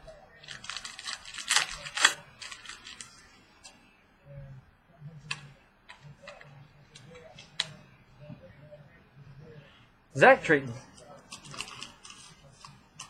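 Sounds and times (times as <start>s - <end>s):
trading cards rustling and clicking: 0.4s - 3.8s, 10.8s - 13.0s.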